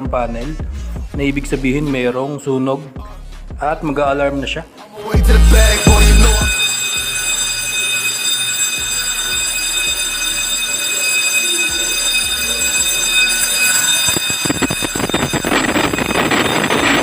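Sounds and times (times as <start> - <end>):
fire alarm bell ringing: 5.2 - 17.0.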